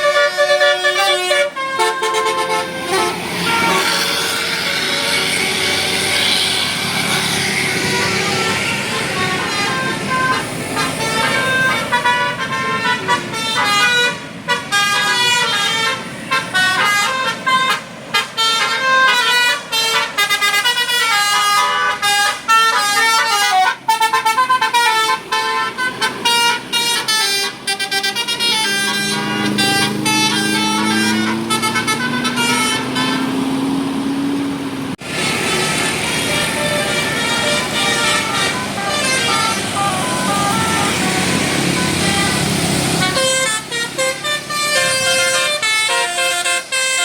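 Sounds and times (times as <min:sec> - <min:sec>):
multi-note bus horn playing tune: 0:00.0 - 0:47.0
low engine note rising: 0:28.3 - 0:45.1.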